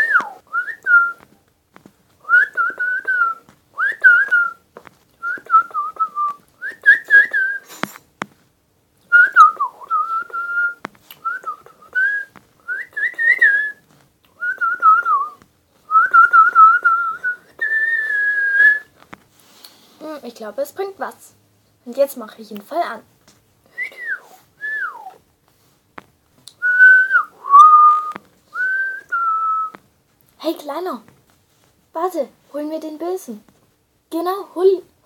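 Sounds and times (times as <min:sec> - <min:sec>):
person whistling a warbling tune: 0:05.2 - 0:07.7, 0:26.6 - 0:29.7.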